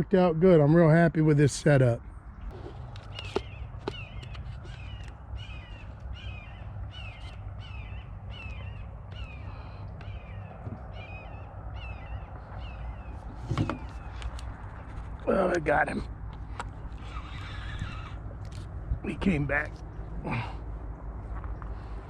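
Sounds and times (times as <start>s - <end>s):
bird calling falling calls: 2.5s - 14.6s, 16.5s - 18.6s.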